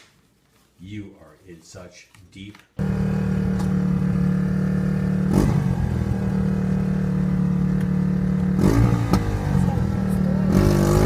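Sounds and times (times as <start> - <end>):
motor running steadily: 2.8 - 11.0.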